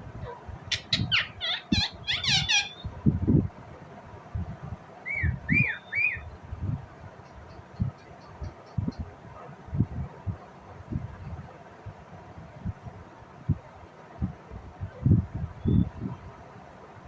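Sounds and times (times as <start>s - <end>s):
parakeet chirping and squawking: 0.7s - 3.0s.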